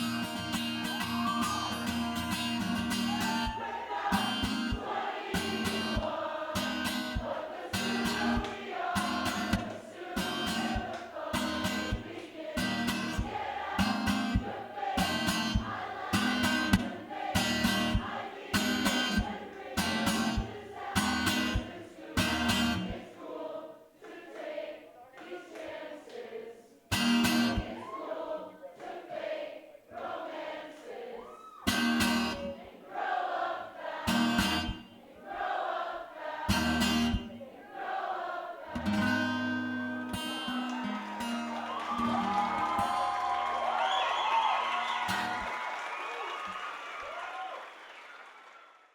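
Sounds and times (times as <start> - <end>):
acoustic guitar strumming: 0.0 - 23.0, 26.9 - 27.8, 31.7 - 32.7, 34.1 - 35.0, 36.5 - 37.4, 38.7 - 43.0
people singing: 0.0 - 40.1.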